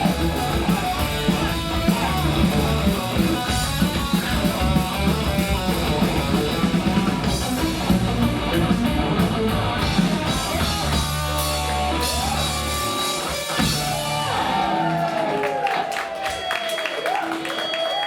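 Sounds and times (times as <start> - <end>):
rock music with guitar and drums: 0.0 - 14.9.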